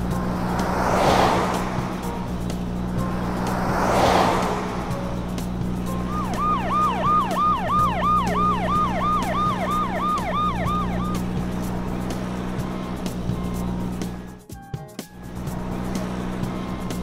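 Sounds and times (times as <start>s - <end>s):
siren wail: 6.0s - 11.5s.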